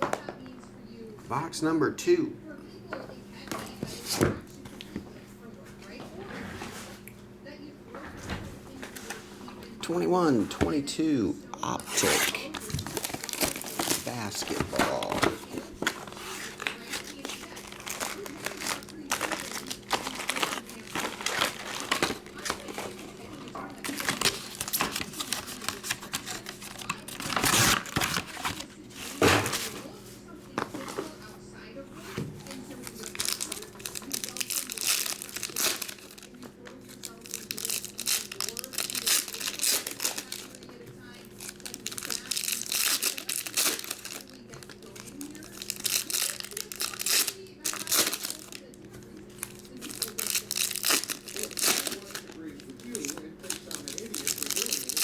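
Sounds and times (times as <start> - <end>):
packs ripping: 11.8 - 29.9, 32.4 - 55.0
wrapper and cardboard crinkling: 11.8 - 30.0, 32.4 - 55.0.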